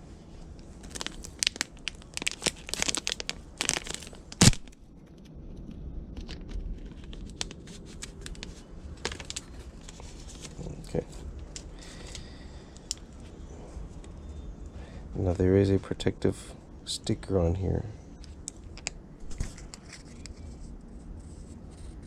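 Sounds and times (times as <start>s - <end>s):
packaging crinkling and tearing: 0.6s - 13.5s
handling rustles: 6.2s - 14.2s, 18.2s - 21.6s.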